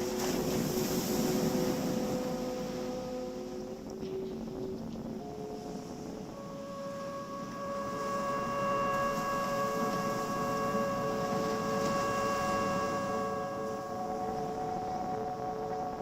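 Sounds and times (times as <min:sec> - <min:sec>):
soft hiss: 0:00.0 - 0:16.0
synthesizer chord: 0:05.2 - 0:16.0.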